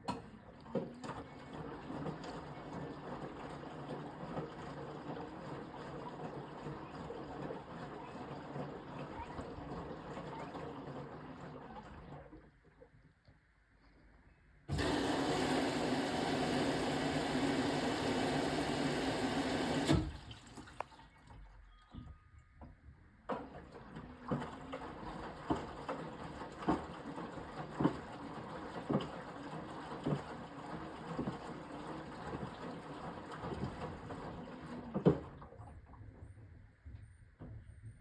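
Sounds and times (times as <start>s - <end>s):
water rushing into washing machine: 0.0s - 12.6s, 14.7s - 21.5s, 23.3s - 36.2s.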